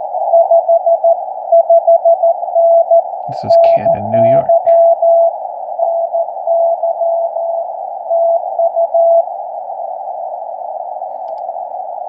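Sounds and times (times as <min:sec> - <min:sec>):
radio receiver hiss: 0:03.3 - 0:04.9
morse code tone: 0:03.3 - 0:05.2.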